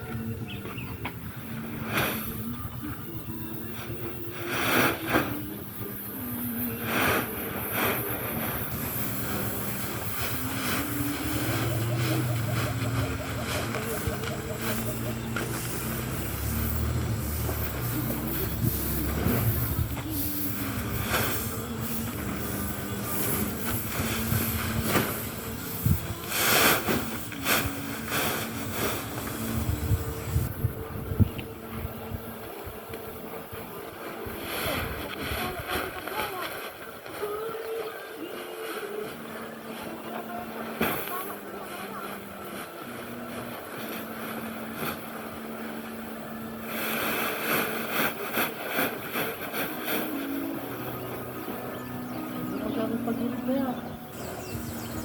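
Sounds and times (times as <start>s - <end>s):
motor hum: 0.0s - 55.0s
uneven rustling or wind noise: 0.0s - 55.0s.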